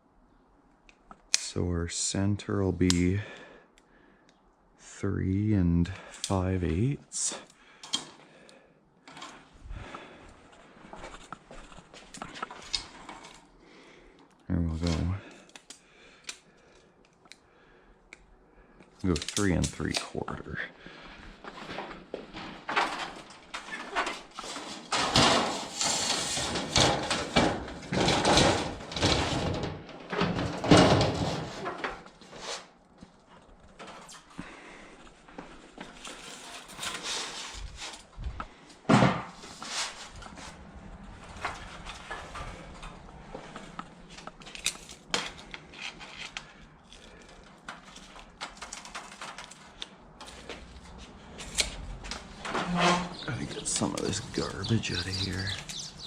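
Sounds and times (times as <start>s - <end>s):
roofing shingles handled: 21.0s - 32.6s, 41.2s - 56.0s
sheet steel scraping and clanking: 21.8s - 31.9s, 36.0s - 38.0s, 51.5s - 56.0s.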